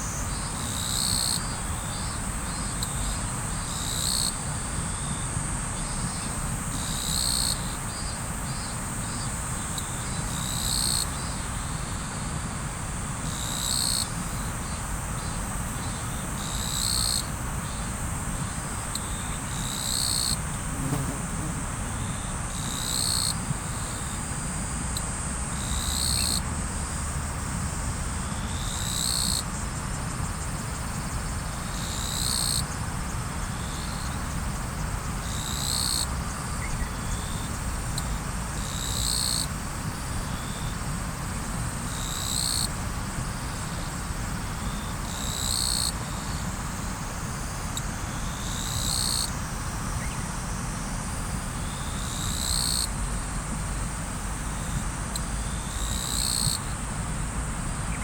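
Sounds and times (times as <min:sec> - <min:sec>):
high trill of insects: 0:19.0 - 0:24.3, 0:54.4 - 0:58.0.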